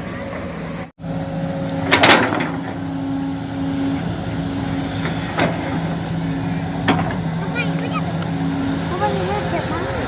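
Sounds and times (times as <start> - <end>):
loud clatter: 1.8 - 2.8.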